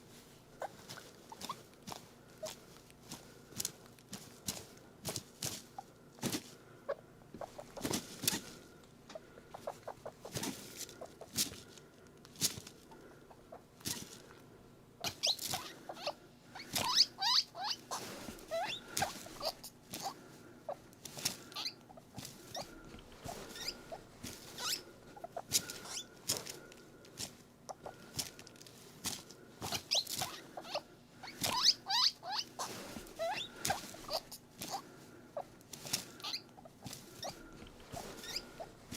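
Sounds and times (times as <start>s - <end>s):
guinea pig squeaks: 0.6s - 2.7s, 6.9s - 8.6s, 9.2s - 11.4s, 15.0s - 26.4s, 29.6s - 38.9s.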